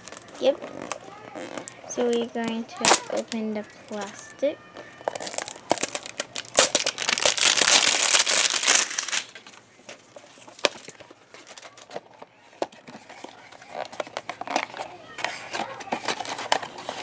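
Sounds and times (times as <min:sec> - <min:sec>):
plastic wrapper crinkling and tearing: 0:00.0 - 0:09.6, 0:10.3 - 0:12.3.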